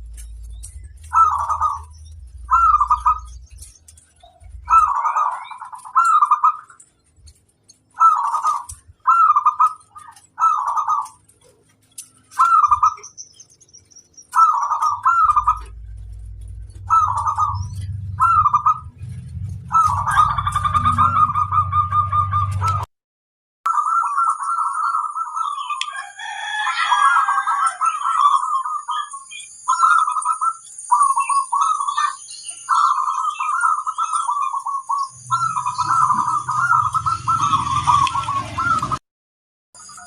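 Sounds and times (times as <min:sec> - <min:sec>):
low rumble: 0:00.0 - 0:05.1, 0:14.9 - 0:22.9
dove cooing: 0:00.0 - 0:06.8, 0:07.9 - 0:13.1, 0:14.3 - 0:22.9, 0:23.7 - 0:39.0.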